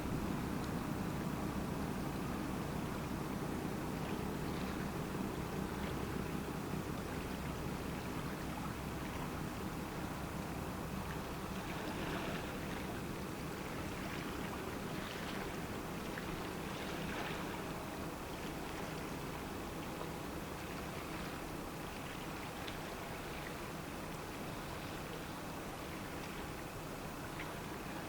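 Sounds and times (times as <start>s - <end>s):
low machinery hum: 0.0s - 28.0s.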